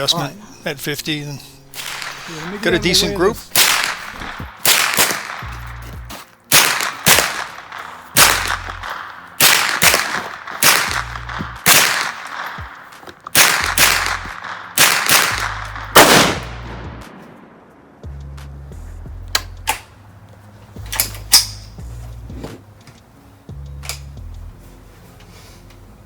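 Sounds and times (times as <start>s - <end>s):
rifle shots echoing: 1.7s - 2.7s, 3.5s - 5.9s, 6.5s - 18.0s.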